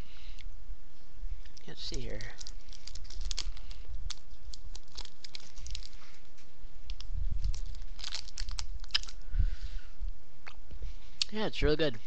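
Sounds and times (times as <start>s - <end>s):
chewing candy bar: 1.4s - 6.1s, 6.9s - 9.2s.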